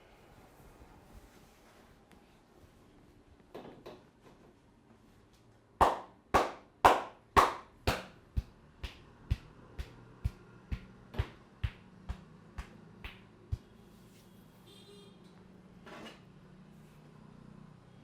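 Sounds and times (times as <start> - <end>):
hands slapping body: 5.8 - 13.7.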